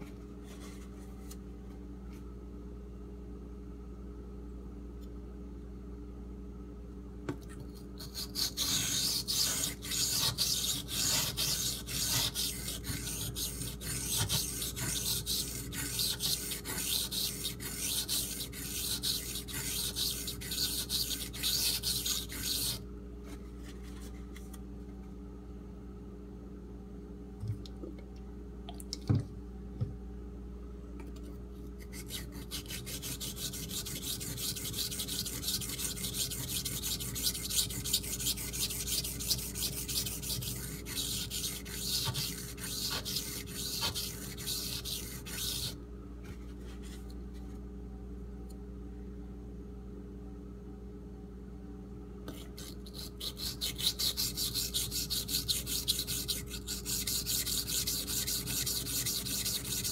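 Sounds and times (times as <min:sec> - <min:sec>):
knife scraping on whetstone: 0:08.0 - 0:22.8, 0:31.8 - 0:45.8, 0:52.5 - 0:59.9.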